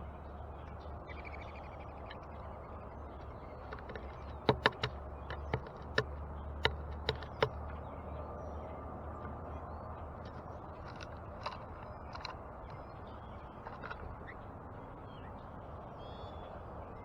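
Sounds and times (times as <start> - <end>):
outdoor background: 0.0 - 17.0
bird pecking at feeder: 3.5 - 7.6.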